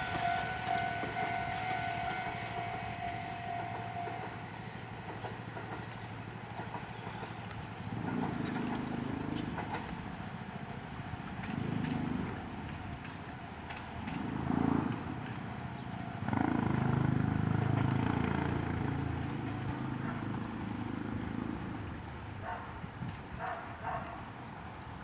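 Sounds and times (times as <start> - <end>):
passing vehicles rumbling: 0.0 - 6.7, 13.8 - 22.5.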